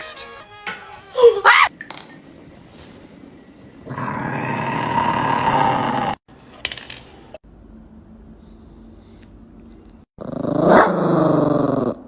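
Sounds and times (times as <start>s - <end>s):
dog growling: 3.8s - 6.2s, 10.2s - 12.0s.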